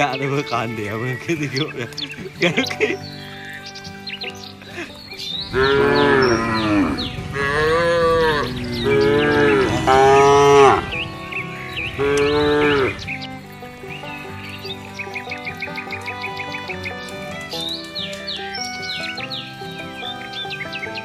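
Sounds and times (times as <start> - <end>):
cattle mooing: 5.4 - 17.6.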